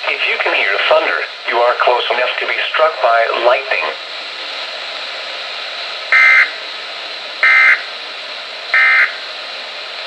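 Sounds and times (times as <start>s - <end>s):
radio hiss: 0.0s - 10.0s
two-tone digital data bursts: 6.2s - 6.5s, 7.4s - 7.8s, 8.8s - 9.2s.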